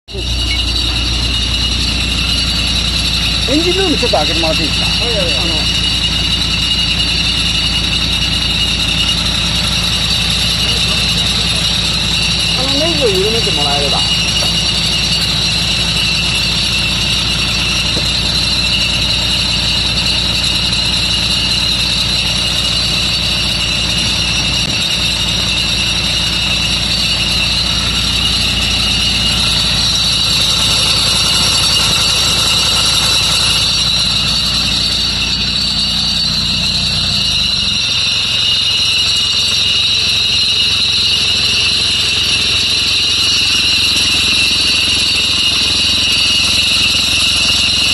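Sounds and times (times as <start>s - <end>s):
bus engine rumble: 0.0s - 38.4s
high-pitched whine: 0.1s - 47.9s.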